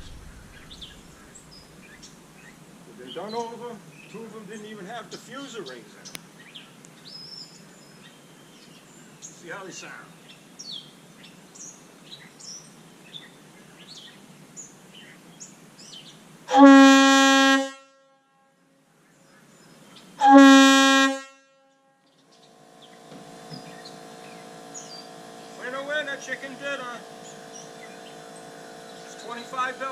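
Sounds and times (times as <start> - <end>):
faint birds chirping: 0.0 - 16.4, 22.0 - 29.9
air horn blasts: 16.5 - 18.0, 20.2 - 21.5.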